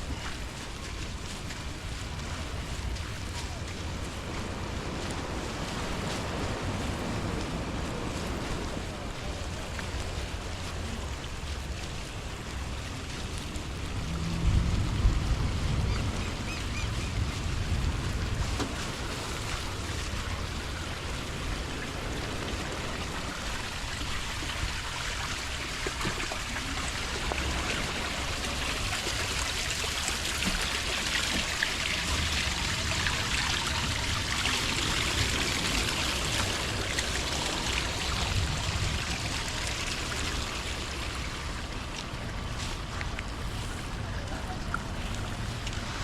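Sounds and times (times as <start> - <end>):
heavy rain falling: 0.0 - 43.1
low rumble: 6.2 - 23.0.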